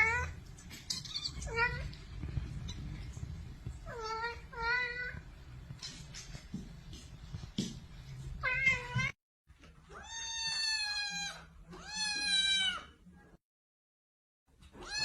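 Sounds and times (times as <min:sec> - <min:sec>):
cat meowing: 0:10.0 - 0:12.9, 0:14.8 - 0:15.0.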